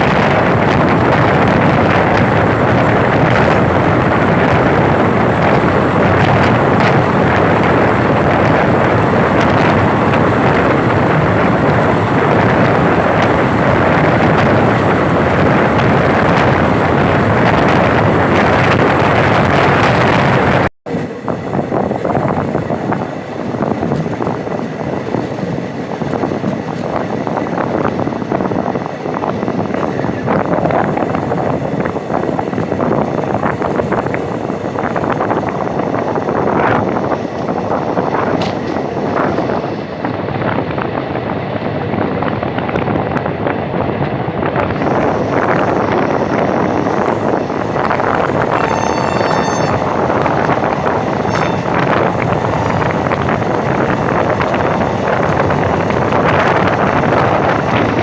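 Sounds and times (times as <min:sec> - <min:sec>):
train rumbling and rattling: 0:00.0 - 0:58.0
wind rushing over microphone: 0:00.0 - 0:58.0
high-pitched tone: 0:48.5 - 0:50.0, 0:51.2 - 0:52.0.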